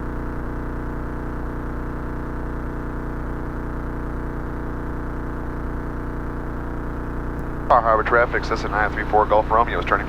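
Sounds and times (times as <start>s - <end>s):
aircraft engine and propeller drone: 7.7s - 10.0s.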